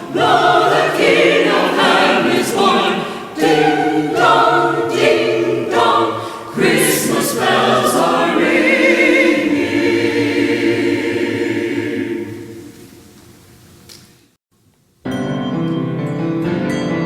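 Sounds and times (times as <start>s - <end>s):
choir singing held chord: 0.0s - 13.1s.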